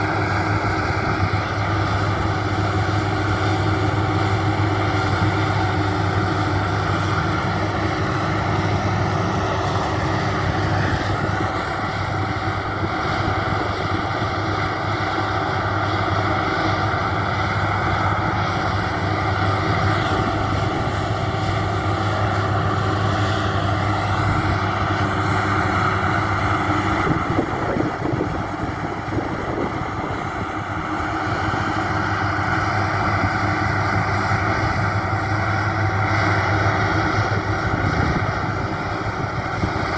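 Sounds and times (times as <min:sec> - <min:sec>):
combine harvester running: 0:00.0 - 0:39.9
threshing machinery whir and rattle: 0:00.0 - 0:39.9.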